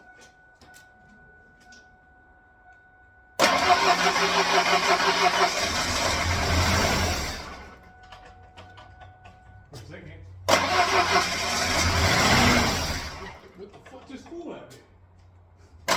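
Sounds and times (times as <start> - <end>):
starter motor cranking: 3.4 - 7.8, 10.5 - 13.5
engine firing briefly: 10.5 - 13.4.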